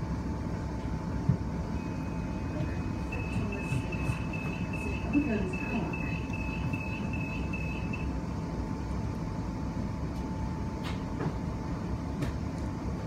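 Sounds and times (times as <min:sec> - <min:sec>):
electric train rumble and whine: 0:00.0 - 0:13.0
rapid high-pitched beeping: 0:01.8 - 0:08.1.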